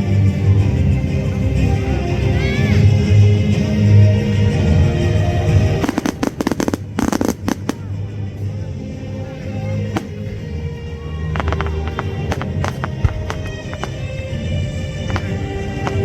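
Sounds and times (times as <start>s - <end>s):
music: 0.0s - 16.0s
fireworks bangs: 5.7s - 8.0s, 9.9s - 10.4s, 11.3s - 16.0s.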